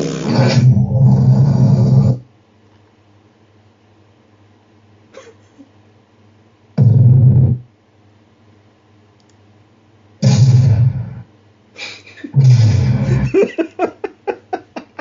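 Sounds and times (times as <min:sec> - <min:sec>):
distorted bass-heavy sound effects: 0:00.0 - 0:02.2, 0:06.8 - 0:07.6, 0:10.2 - 0:11.3, 0:12.4 - 0:13.4.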